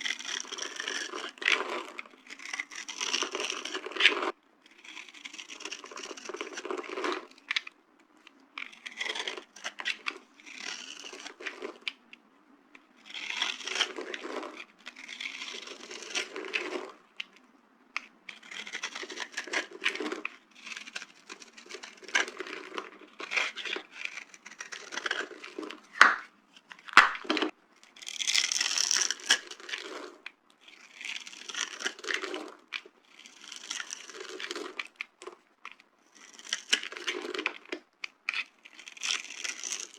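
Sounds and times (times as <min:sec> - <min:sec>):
dry soap crunching: 0:00.0 - 0:12.2, 0:12.9 - 0:39.9
sharp snaps: 0:26.0 - 0:26.3, 0:27.0 - 0:27.3.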